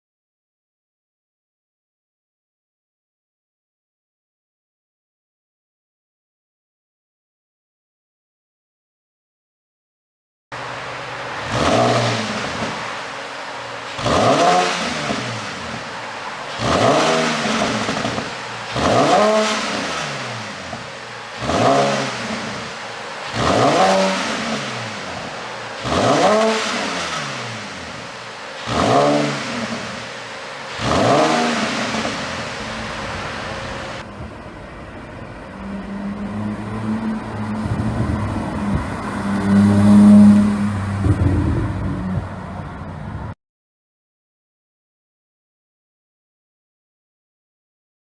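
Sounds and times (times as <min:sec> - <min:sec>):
exhaust popping and crackling: 0:10.6 - 0:34.0, 0:40.5 - 0:42.8
car engine revving: 0:10.6 - 0:34.1, 0:35.3 - 0:43.2
car engine idling: 0:10.6 - 0:43.2.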